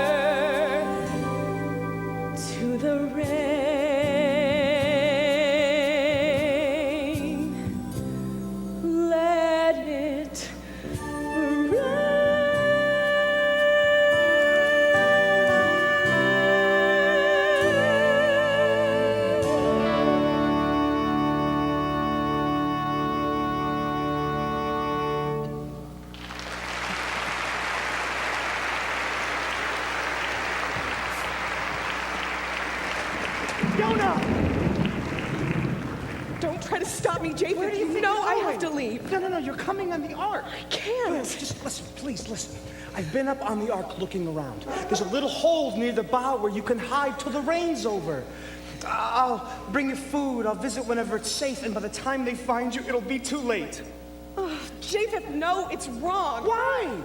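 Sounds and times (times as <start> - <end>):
orchestra playing: 15.4 - 25.8
audience applauding: 26.1 - 37.4.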